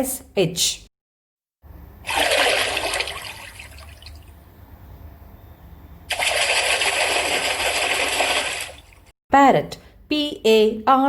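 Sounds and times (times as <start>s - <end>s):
water rushing and splashing: 2.0s - 4.5s, 6.1s - 9.1s.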